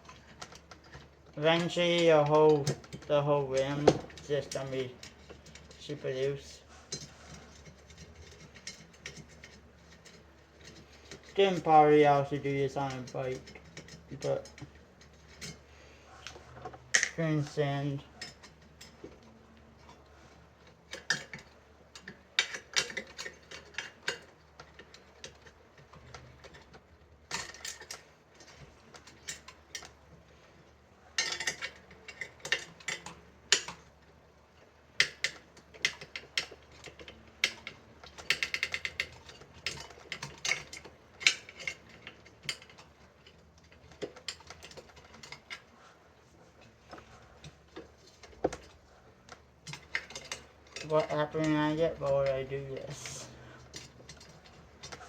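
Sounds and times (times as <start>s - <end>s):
metallic clicks of bicycle spokes: 35.0s - 45.7s.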